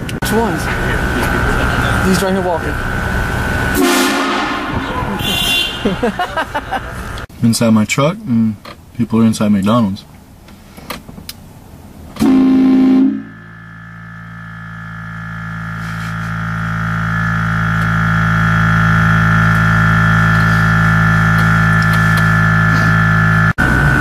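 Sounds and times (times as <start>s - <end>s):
train horn blasts: 3.7s - 6.0s, 12.2s - 13.4s.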